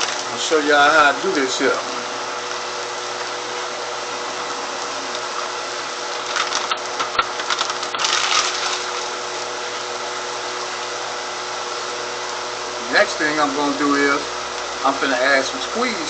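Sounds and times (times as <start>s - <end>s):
crackling rustling clicks: 6.1s - 9.1s.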